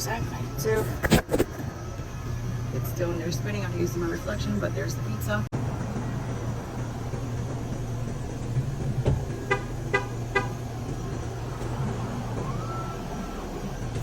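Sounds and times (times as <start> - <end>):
faint rising tone: 10.8 - 14.0.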